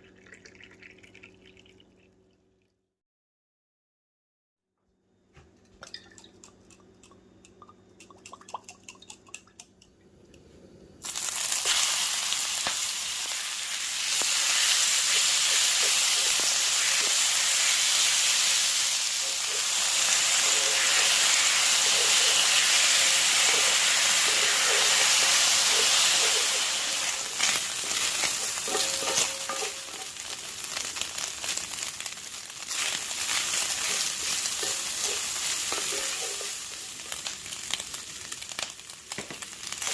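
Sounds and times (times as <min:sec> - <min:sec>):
food sizzling in hot oil: 0:11.0 - 0:39.9
utensil stirring in pan: 0:19.2 - 0:31.0, 0:32.6 - 0:37.3.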